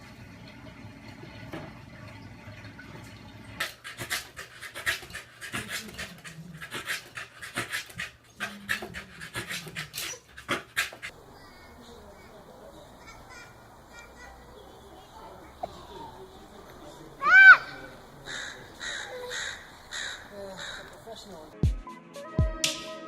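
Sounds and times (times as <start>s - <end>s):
dog panting: 3.6s - 21.6s.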